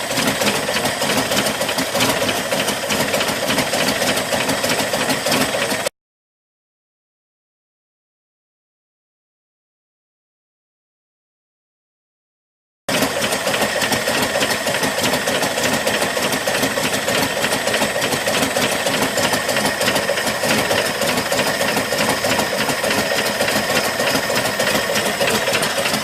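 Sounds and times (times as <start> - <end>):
engine idling with clatter: 0.0 - 5.9, 12.9 - 26.0.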